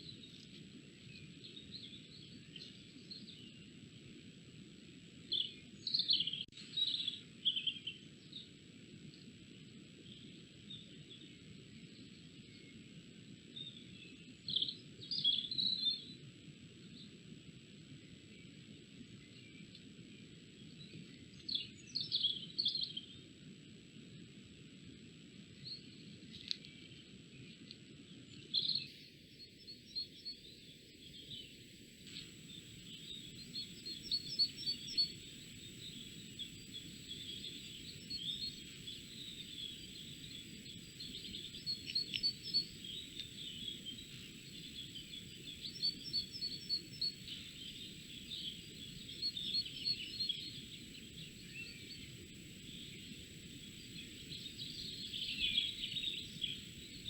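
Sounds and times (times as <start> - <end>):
low background hiss: 0.0 - 57.0
songbirds singing and chirping: 27.4 - 57.0.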